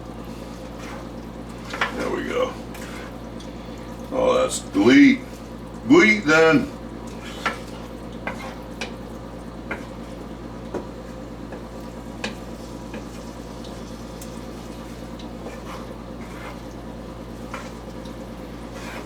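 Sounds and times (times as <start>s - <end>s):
food simmering in a pan: 0.0s - 4.1s, 4.8s - 19.0s.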